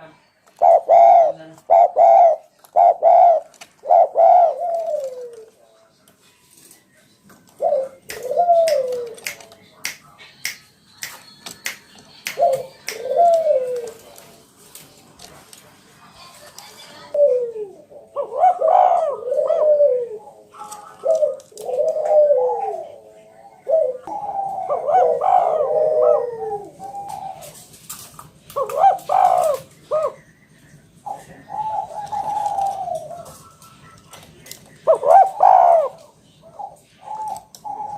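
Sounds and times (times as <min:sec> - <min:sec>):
dove cooing: 0:00.6 - 0:05.6, 0:07.5 - 0:09.4, 0:12.3 - 0:14.4, 0:17.1 - 0:30.4, 0:31.0 - 0:37.9.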